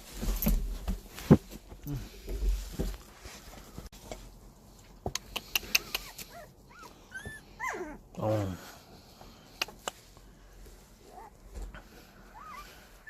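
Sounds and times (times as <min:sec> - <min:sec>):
puppies whimpering: 0:05.7 - 0:08.1, 0:12.2 - 0:13.0.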